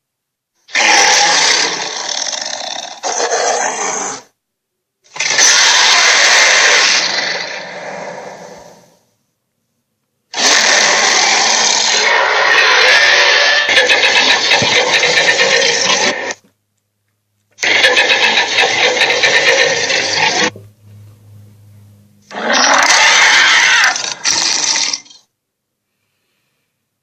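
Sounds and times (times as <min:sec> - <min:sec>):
harsh noisy monster sound effect: 0:00.7 - 0:04.3, 0:05.1 - 0:08.9, 0:10.3 - 0:16.4, 0:17.6 - 0:20.5, 0:22.3 - 0:25.3.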